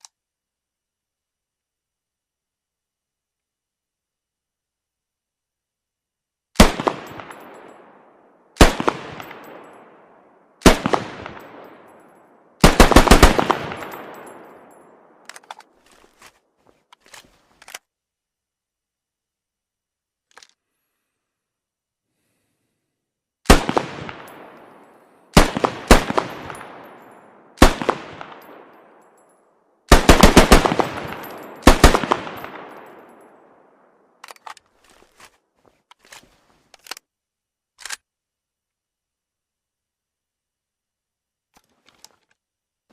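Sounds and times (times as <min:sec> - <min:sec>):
rifle shots echoing: 0:06.6 - 0:15.3, 0:23.5 - 0:29.0, 0:29.9 - 0:33.9.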